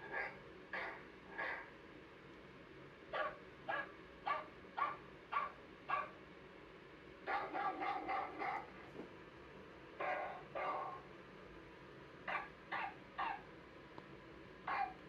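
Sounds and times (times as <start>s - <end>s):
recorded dog barking: 0.0s - 1.7s, 3.1s - 6.2s, 7.2s - 8.7s, 10.0s - 11.1s, 12.3s - 13.5s, 14.6s - 15.0s.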